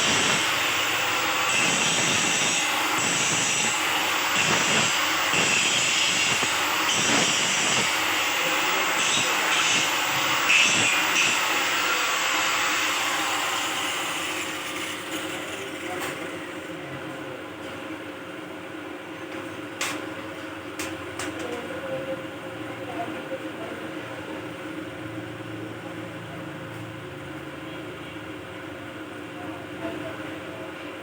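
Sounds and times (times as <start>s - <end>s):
welding arc crackling and hissing: 0.0s - 14.6s.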